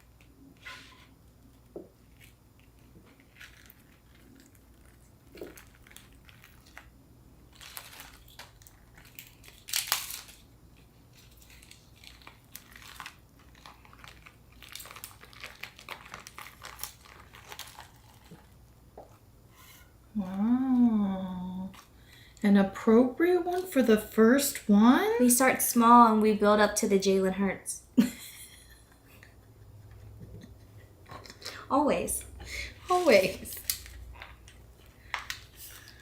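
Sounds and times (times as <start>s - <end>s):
food packaging crinkling and rustling: 0.0s - 20.4s, 32.9s - 36.0s.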